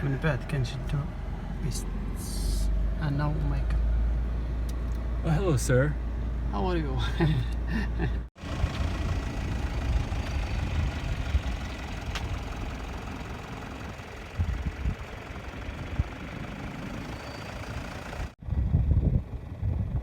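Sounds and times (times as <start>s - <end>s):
vehicle engine and road rumble: 0.0s - 20.0s
wind noise: 8.5s - 12.5s, 14.3s - 16.2s, 18.4s - 20.0s.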